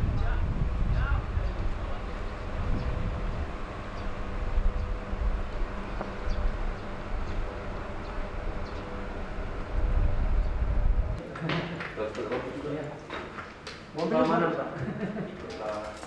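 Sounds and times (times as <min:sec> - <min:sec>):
low uneven rumble: 0:00.0 - 0:11.2
machinery hum: 0:00.0 - 0:11.2.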